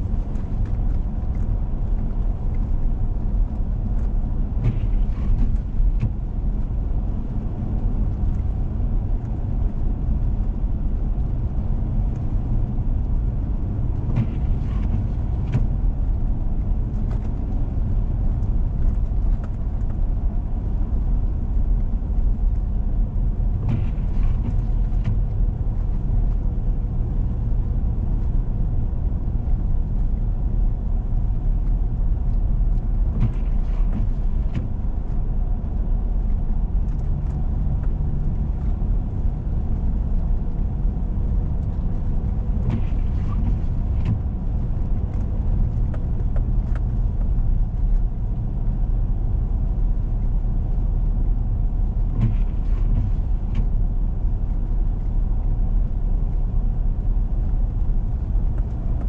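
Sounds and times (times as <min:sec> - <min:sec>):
vehicle driving on snow: 0:00.0 - 0:59.0.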